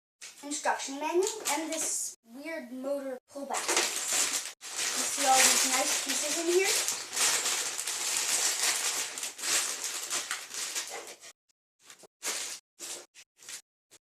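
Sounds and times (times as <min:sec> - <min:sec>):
plastic pieces shifting: 0:03.5 - 0:11.2
plastic bags crinkling: 0:03.5 - 0:11.4.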